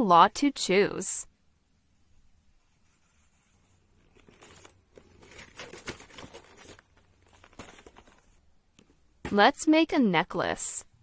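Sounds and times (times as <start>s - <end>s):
plastic packaging crinkling: 4.0s - 8.4s.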